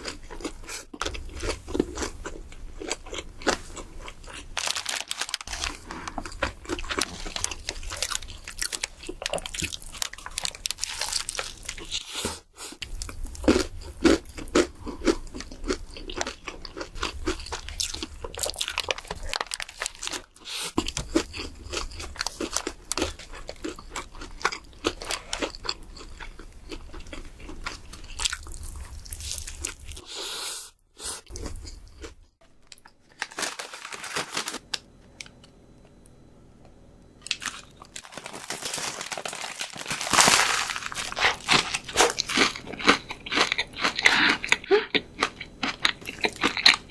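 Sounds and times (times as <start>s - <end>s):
crunching fried chicken: 0.0s - 30.2s, 37.2s - 46.9s.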